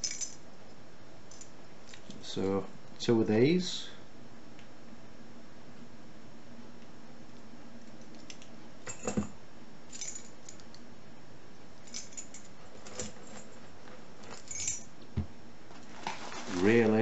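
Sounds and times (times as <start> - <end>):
padlocks clinking: 0.0 - 0.5, 9.9 - 10.8, 11.8 - 14.9.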